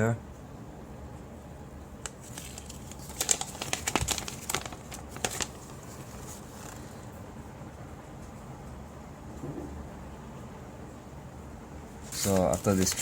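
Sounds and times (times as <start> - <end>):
paper crinkling and rustling: 2.0 - 7.2, 12.0 - 13.0.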